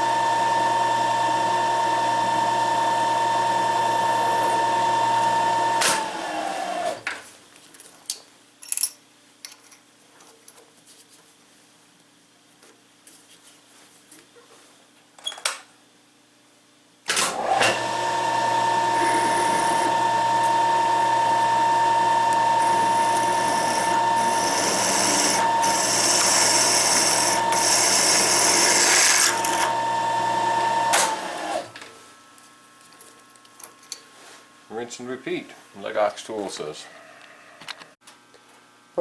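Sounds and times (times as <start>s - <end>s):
milling machine spindle whine: 17.4s - 31.8s.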